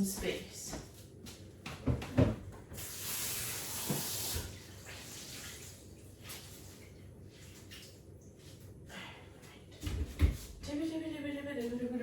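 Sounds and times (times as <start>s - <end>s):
kitchen tap running: 2.2s - 5.9s.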